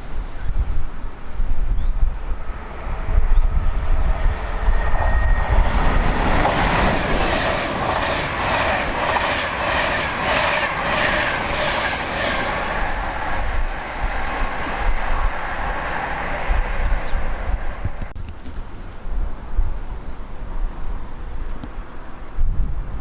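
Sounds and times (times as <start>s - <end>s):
wind buffeting microphone: 0.0s - 23.0s
train wheels beating on rails: 2.5s - 18.2s.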